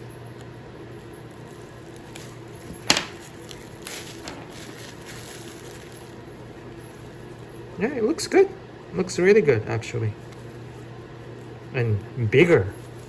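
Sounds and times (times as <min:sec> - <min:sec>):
steady low hum: 0:00.0 - 0:13.0
packaging rustling: 0:01.3 - 0:07.6
sharp crackle of packaging: 0:01.3 - 0:07.6.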